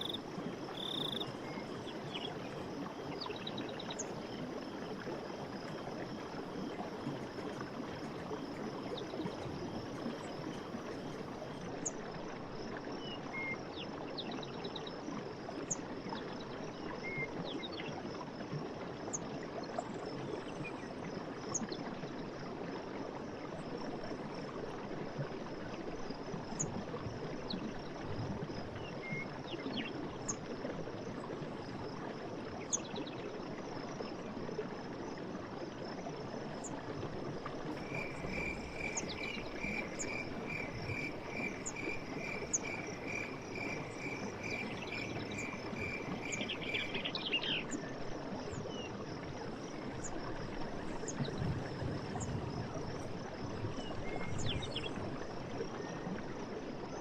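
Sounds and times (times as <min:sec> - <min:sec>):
insects trilling: 0:00.0 - 0:11.6, 0:37.7 - 0:47.7.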